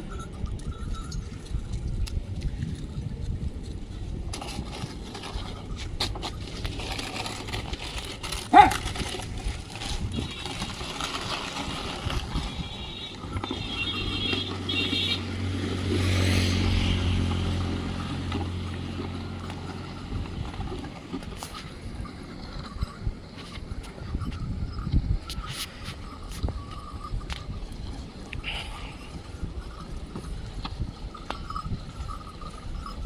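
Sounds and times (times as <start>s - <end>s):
steady outdoor noise: 0.0s - 33.0s
engine passing by: 12.9s - 21.6s.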